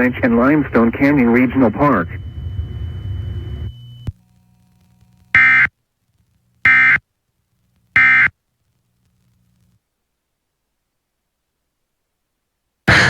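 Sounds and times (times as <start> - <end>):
buzzy digital data tones: 0.0 - 5.7.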